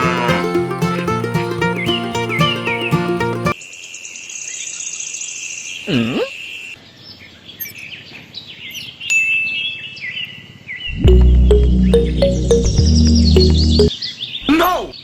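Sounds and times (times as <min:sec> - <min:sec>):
steady high trill: 0:00.0 - 0:03.6, 0:11.0 - 0:13.9
birds chirping: 0:00.1 - 0:03.6.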